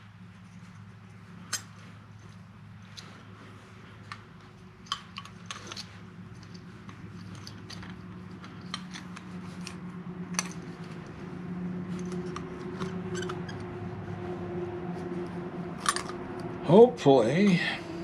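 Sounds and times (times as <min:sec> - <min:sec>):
steady low hum: 0:00.0 - 0:18.0
small parts clicking: 0:04.8 - 0:11.1.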